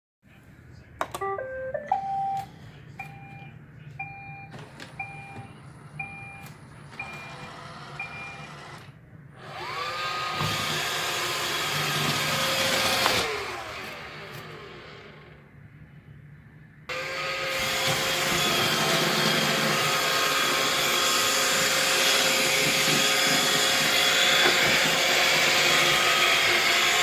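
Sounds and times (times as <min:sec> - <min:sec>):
electronic tones: 0:01.2 - 0:03.4
robot vacuum motor whining: 0:07.0 - 0:15.4, 0:16.9 - 0:27.0.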